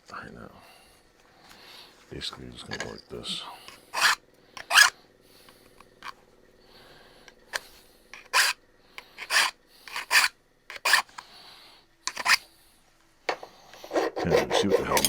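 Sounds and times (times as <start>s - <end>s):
hand file rasping on metal: 3.9s - 4.9s, 8.2s - 8.6s, 9.2s - 11.1s, 12.1s - 12.4s, 13.8s - 15.0s.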